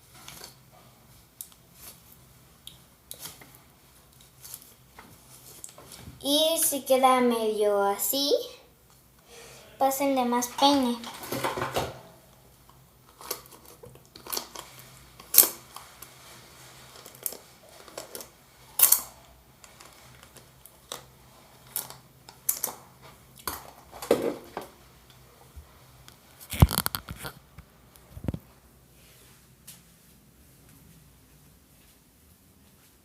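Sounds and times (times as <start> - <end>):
comb clicking and scraping: 26.1 - 27.4.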